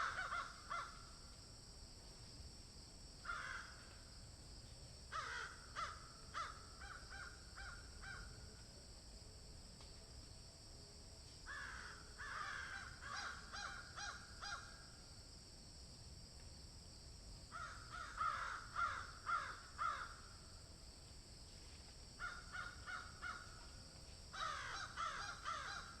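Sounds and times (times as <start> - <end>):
crows cawing: 0.0 - 1.1, 3.2 - 3.8, 5.1 - 8.3, 11.5 - 14.8, 17.5 - 20.3, 22.2 - 23.6, 24.3 - 26.0
faint background hiss: 0.0 - 26.0.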